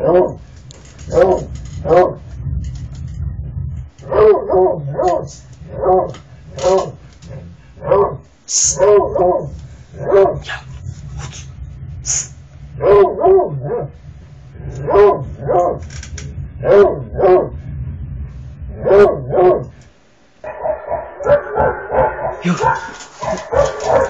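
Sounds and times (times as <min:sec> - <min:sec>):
low steady rumble: 0:00.0 - 0:24.0
dog barking: 0:04.0 - 0:07.0, 0:07.8 - 0:10.6, 0:20.4 - 0:24.0.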